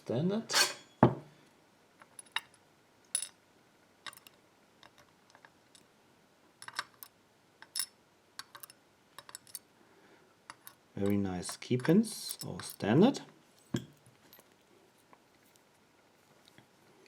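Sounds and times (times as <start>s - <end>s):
small lock pins clicking: 4.0s - 5.9s, 6.6s - 9.7s.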